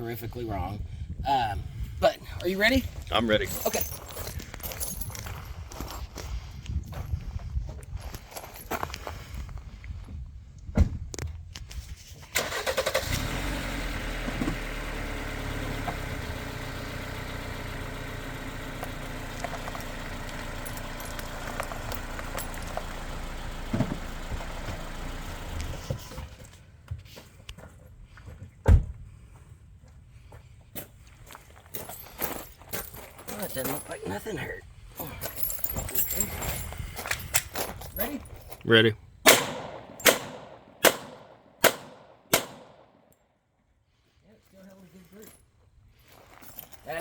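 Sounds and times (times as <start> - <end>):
knocks and sharp thump: 10.7 - 11.1, 23.7 - 24.0, 28.6 - 29.0
vehicle engine running: 13.1 - 26.4
tyres rolling over gravel: 15.5 - 26.4.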